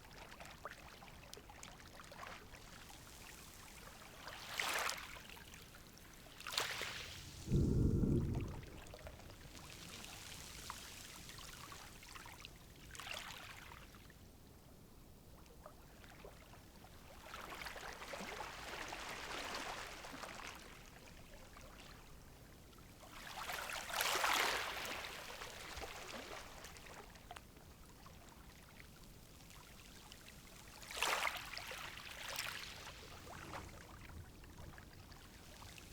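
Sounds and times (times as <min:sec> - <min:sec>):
sea waves washing in: 0:07.1 - 0:09.3.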